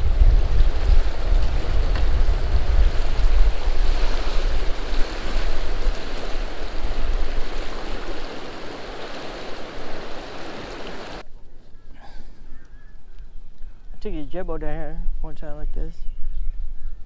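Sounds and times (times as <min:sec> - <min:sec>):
wind buffeting microphone: 0:00.0 - 0:11.2
steady rushing hiss: 0:04.4 - 0:11.2.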